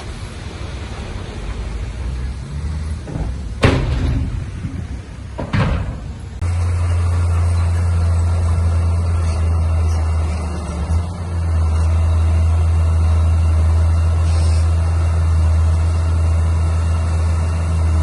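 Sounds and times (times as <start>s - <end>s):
heavy machinery engine rumble: 0.0s - 18.0s
low engine drone: 0.0s - 18.0s
loud bangs: 3.0s - 6.4s.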